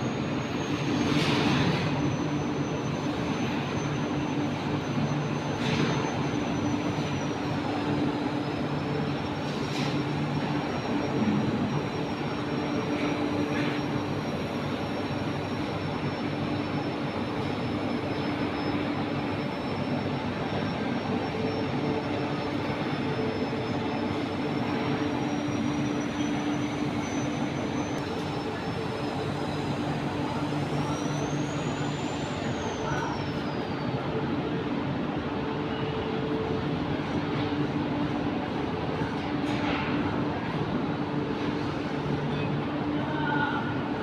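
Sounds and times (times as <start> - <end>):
machinery roar: 0.0 - 44.0
thin high whine: 0.0 - 44.0.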